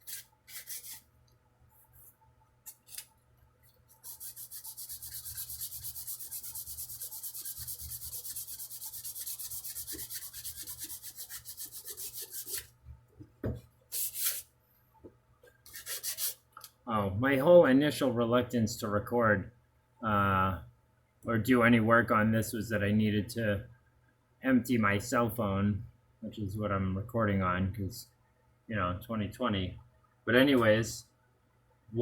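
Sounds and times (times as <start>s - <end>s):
sandpaper rubbing on wood: 0.0s - 1.0s, 4.0s - 12.7s, 15.7s - 16.4s.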